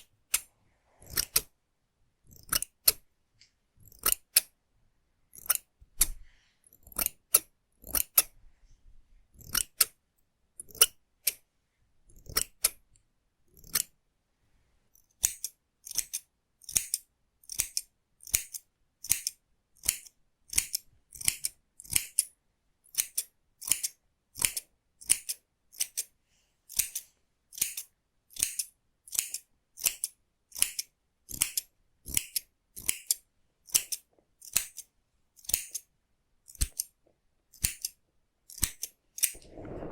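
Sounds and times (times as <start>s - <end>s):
scissors snipping hair: 0.0s - 1.5s, 2.3s - 3.0s, 3.8s - 4.5s, 6.8s - 8.3s, 15.2s - 22.3s, 22.9s - 26.1s, 26.7s - 35.8s, 36.5s - 36.9s, 37.5s - 39.4s.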